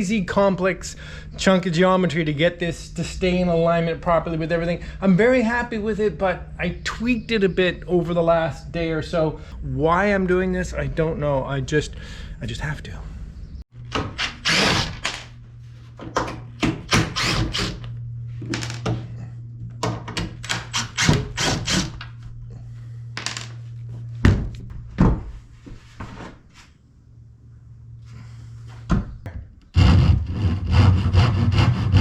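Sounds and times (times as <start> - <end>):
low steady hum: 0.0 - 32.0
wooden knocks and thunks: 24.2 - 25.3.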